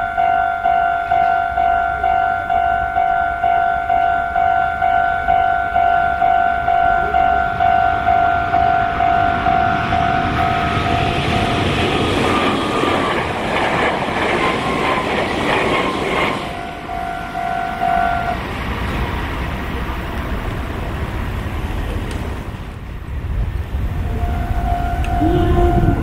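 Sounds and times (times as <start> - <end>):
level crossing warning bell: 0.0 - 12.9, 16.5 - 20.3, 24.1 - 26.0
train passing with falling whine: 0.0 - 26.0.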